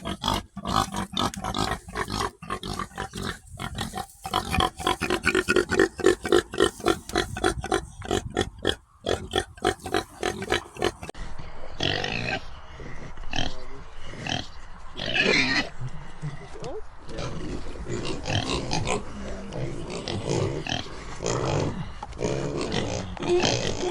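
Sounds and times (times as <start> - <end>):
pig high calls: 0.0 - 11.1
pig grunting: 0.0 - 11.2, 11.8 - 16.5, 17.1 - 23.9.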